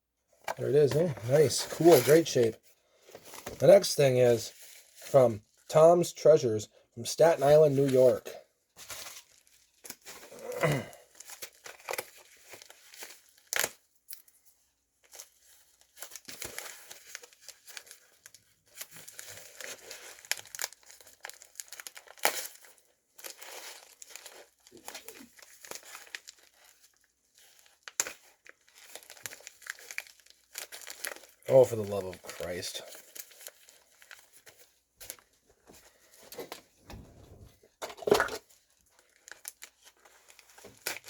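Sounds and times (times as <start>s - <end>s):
packaging tearing and crinkling: 0.5s - 2.5s, 8.8s - 14.2s, 15.0s - 35.2s, 36.2s - 41.0s.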